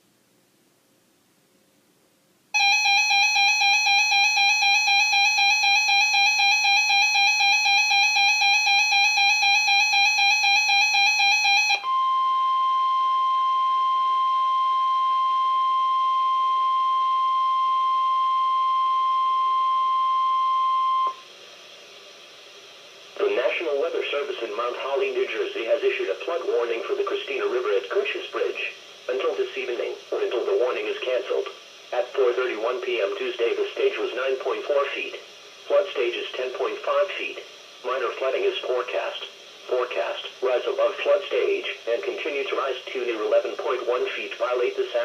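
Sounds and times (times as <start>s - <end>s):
rapidly pulsing electronic alarm beep: 2.6s - 21.2s
steady pure warning tone: 2.6s - 45.0s
faint hiss: 21.1s - 45.0s.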